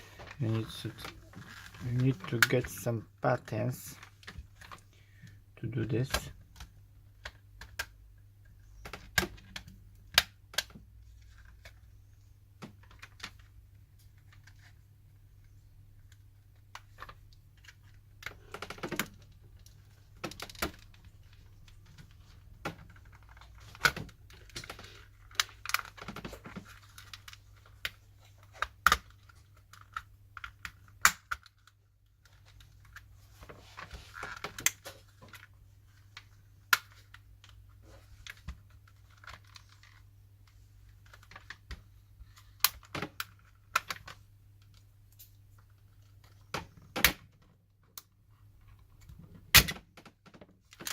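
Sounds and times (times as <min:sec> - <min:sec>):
plastic scraping: 0:00.0 - 0:02.9
plastic clips clicking and snapping: 0:16.8 - 0:33.0.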